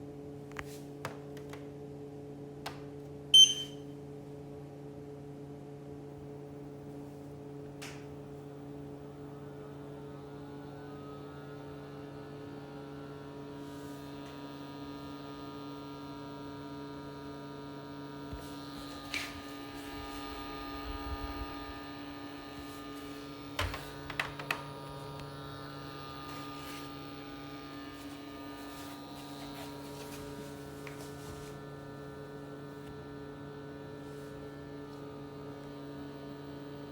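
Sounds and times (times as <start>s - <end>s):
air purifier humming: 0.0s - 36.9s
short beep: 3.4s - 3.8s.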